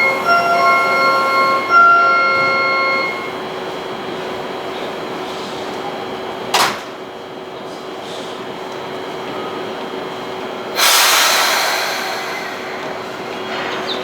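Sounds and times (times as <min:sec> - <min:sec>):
electronic door chime: 0:00.0 - 0:03.4
station noise: 0:00.0 - 0:04.7
sharp hiss: 0:10.8 - 0:13.2.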